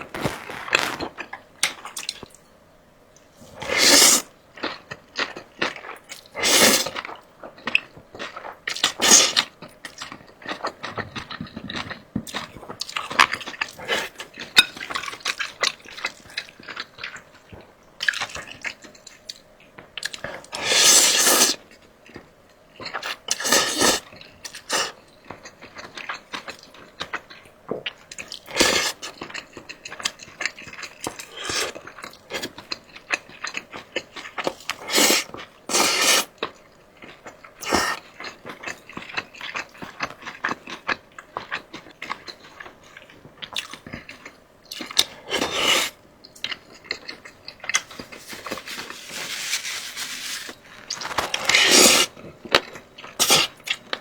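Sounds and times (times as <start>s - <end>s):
small clicks and crackles: 0.0s - 2.3s
chewing and crunching: 4.5s - 20.5s, 24.0s - 54.0s.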